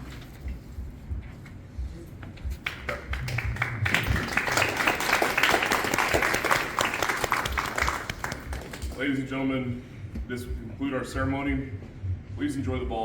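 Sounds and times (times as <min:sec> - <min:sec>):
audience applauding: 0:02.6 - 0:09.0.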